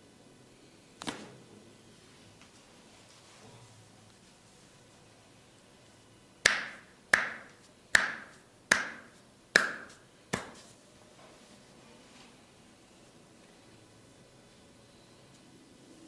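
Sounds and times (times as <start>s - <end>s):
sharp hand snaps: 6.4s - 10.6s.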